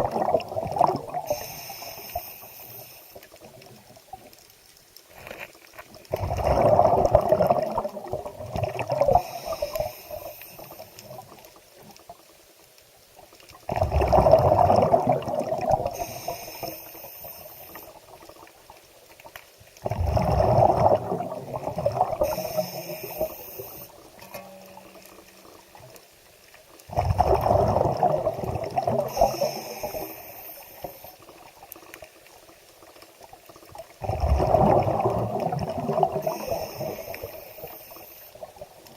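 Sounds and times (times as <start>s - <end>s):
water gurgling and sloshing: 0.0s - 38.9s.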